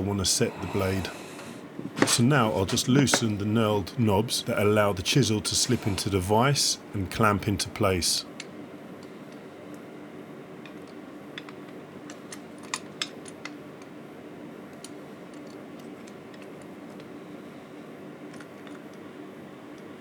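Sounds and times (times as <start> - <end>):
faint hum: 0.0 - 12.4.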